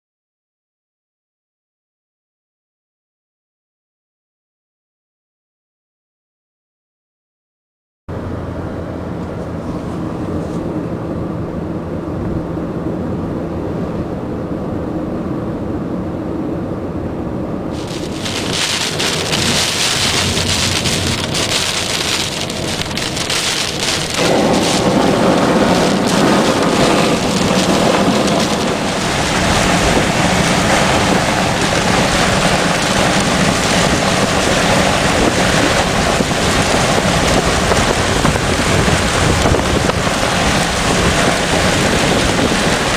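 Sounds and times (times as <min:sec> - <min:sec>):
thunder rumble: 0:09.6 - 0:42.9
heavy rain pouring: 0:17.7 - 0:42.9.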